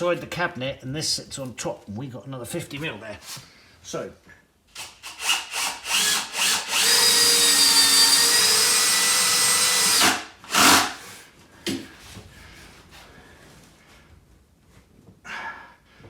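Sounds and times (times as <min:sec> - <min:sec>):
power drill running: 0:04.8 - 0:11.1.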